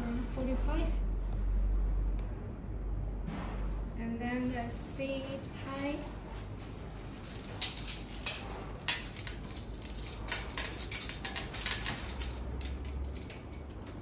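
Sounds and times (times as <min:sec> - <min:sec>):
metal tape measure clicking: 0:06.8 - 0:14.0.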